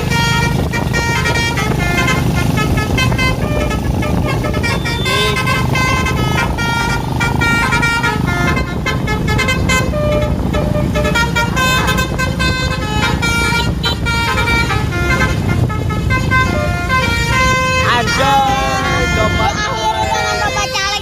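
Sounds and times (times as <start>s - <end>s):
bus horn playing a tune: 0.0s - 21.0s.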